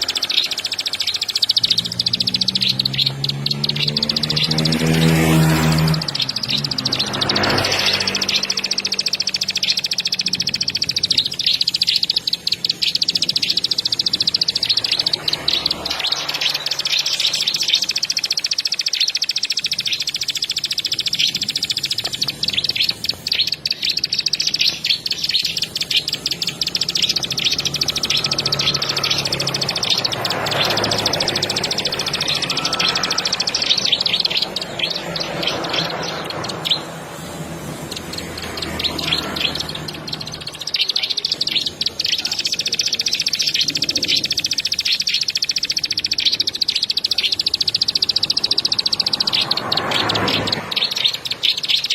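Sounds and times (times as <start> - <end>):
bird singing high trilling song: 0.0 - 51.9.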